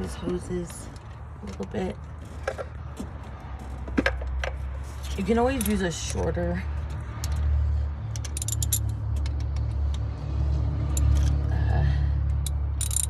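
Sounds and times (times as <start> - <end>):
metal tools clinking: 0.0 - 7.5, 8.1 - 9.4, 10.9 - 11.4, 12.4 - 13.0.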